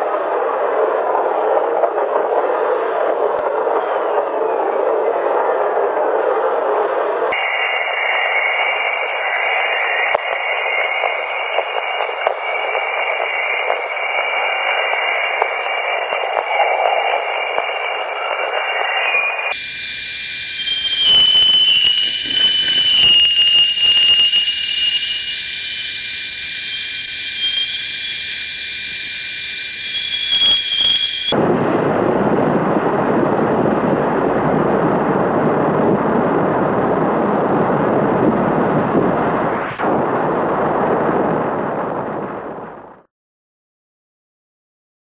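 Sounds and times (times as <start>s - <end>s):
radio crackles: 7.4s - 18.8s, 19.5s - 31.3s
steady radio hiss: 7.4s - 31.4s
wavering high whistling tones: 7.4s - 31.4s.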